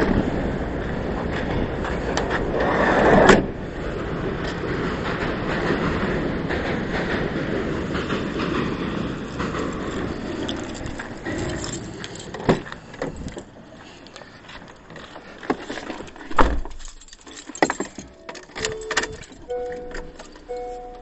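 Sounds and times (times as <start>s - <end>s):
rumbling noise: 0.0s - 13.8s
gear clinking and knocking: 9.2s - 13.6s, 14.6s - 21.0s.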